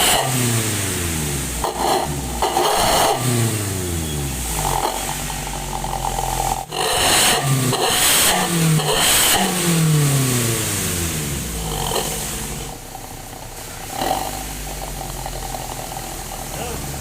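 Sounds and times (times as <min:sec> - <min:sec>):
car engine revving: 0:00.0 - 0:17.0.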